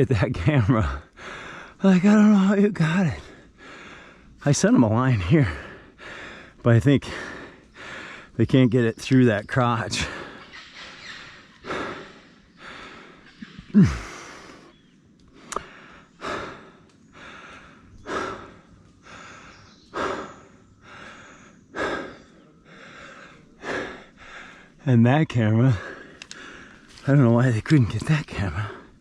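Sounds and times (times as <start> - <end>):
man breathing hard: 1.0 - 1.8, 3.1 - 4.4, 5.4 - 8.4, 10.0 - 24.9, 25.6 - 27.1.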